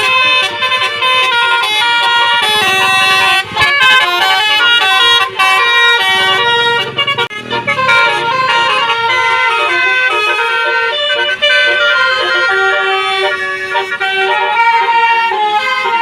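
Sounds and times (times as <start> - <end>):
multi-tone bus horn melody: 0.0 - 16.0.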